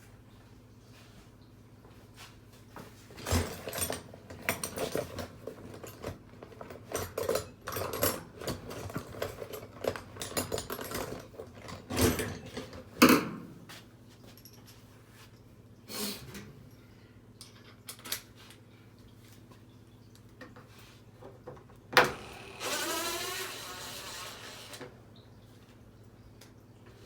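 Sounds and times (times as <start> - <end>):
metal tools clinking and rattling: 3.2 - 13.3.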